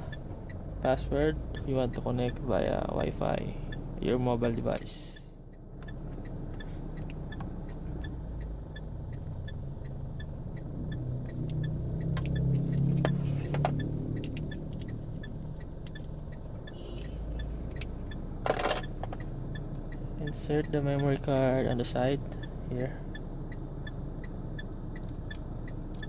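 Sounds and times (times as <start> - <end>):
faint regular ticking: 0.0 - 26.0
vehicle engine rumbling: 0.0 - 26.0
sharp clicks: 5.5 - 20.0, 23.8 - 26.0.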